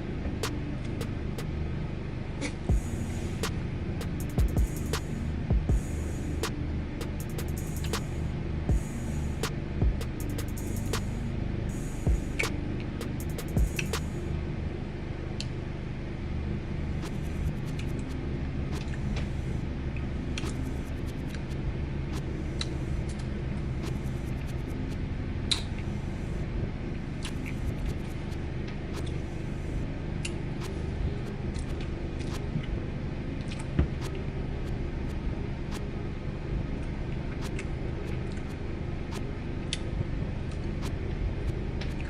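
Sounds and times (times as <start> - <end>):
low rumble: 0.0 - 14.8.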